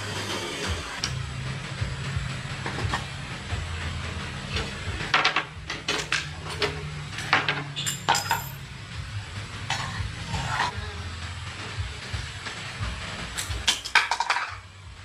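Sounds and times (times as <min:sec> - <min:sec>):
metal tools clinking: 0:05.1 - 0:08.6.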